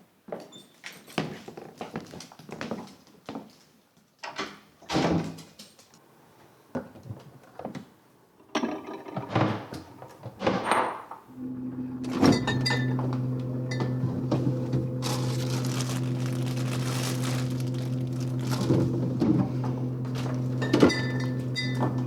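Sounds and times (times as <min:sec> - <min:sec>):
steady low hum: 0:11.4 - 0:22.0.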